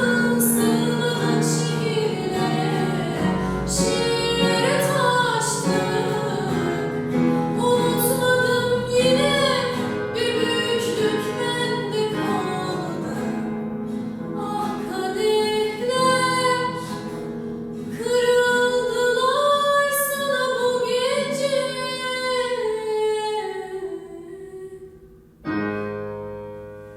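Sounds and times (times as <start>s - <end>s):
woman singing: 0.0s - 25.1s.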